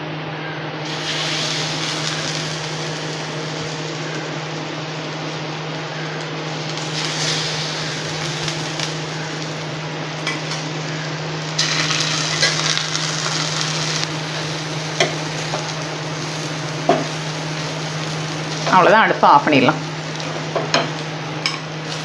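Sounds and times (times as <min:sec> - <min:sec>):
bread sizzling in oil: 0:00.8 - 0:22.0
spatula tapping griddle: 0:10.2 - 0:19.0, 0:19.8 - 0:22.0.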